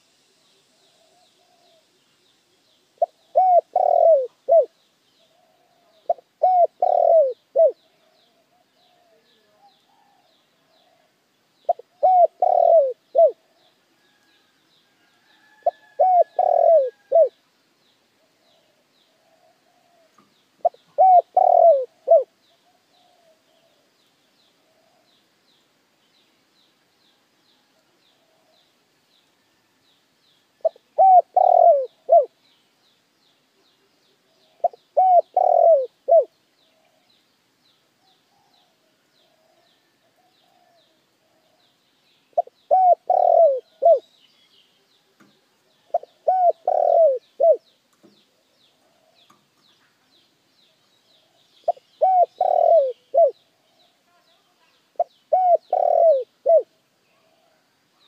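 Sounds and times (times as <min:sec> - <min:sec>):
dove cooing: 0:03.0 - 0:04.7, 0:05.3 - 0:11.1, 0:11.7 - 0:13.6, 0:15.6 - 0:17.4, 0:18.6 - 0:23.8, 0:30.6 - 0:32.4, 0:34.4 - 0:37.0, 0:42.4 - 0:44.0, 0:45.7 - 0:47.6, 0:51.7 - 0:53.4, 0:55.0 - 0:57.6.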